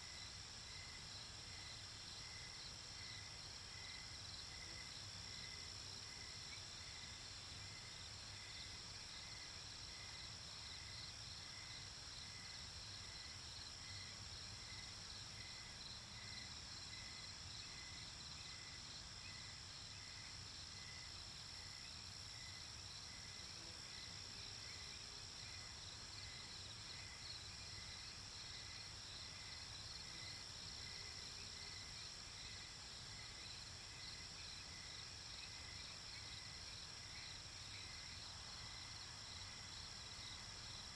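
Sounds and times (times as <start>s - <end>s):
crickets chirping: 0.0s - 40.9s.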